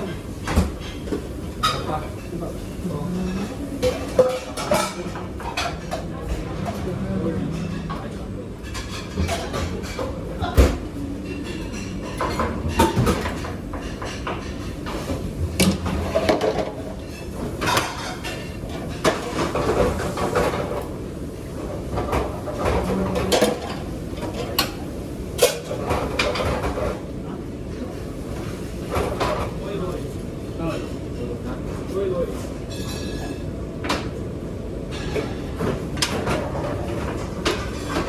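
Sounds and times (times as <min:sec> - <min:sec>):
kitchen background noise: 0:00.0 - 0:38.0
pots and pans clattering: 0:03.3 - 0:27.0, 0:28.4 - 0:29.6, 0:34.9 - 0:38.0.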